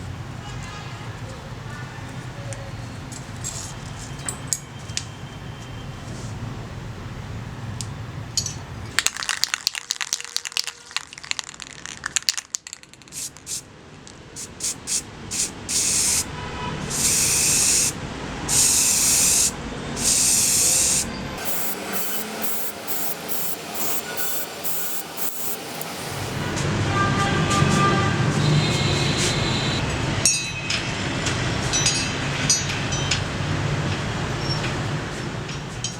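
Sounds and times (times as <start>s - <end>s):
aerosol spray can spraying: 13.1s - 13.6s, 14.4s - 16.3s, 16.9s - 26.5s.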